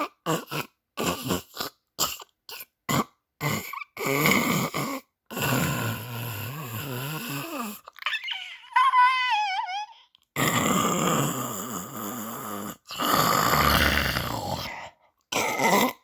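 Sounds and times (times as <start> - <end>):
person snoring: 3.4 - 7.9, 8.8 - 16.0.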